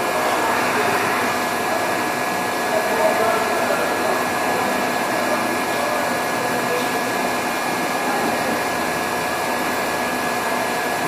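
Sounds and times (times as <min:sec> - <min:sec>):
high-pitched whine: 0:00.0 - 0:05.3
machining center whirring: 0:00.0 - 0:11.0.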